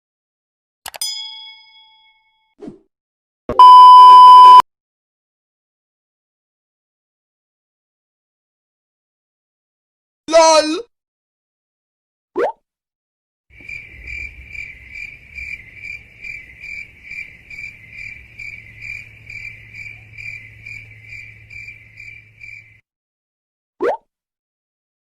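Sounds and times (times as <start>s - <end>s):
crickets chirping: 13.6s - 22.8s.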